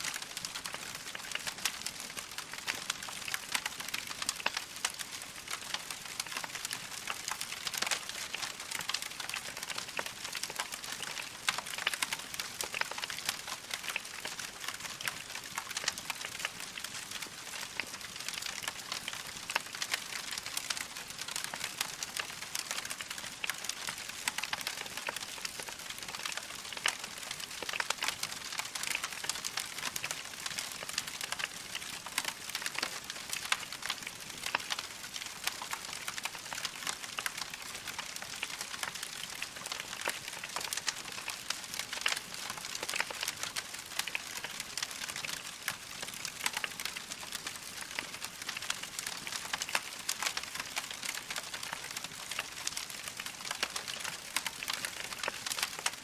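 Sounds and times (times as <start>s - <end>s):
fire crackling in a fireplace: 0.0s - 56.0s.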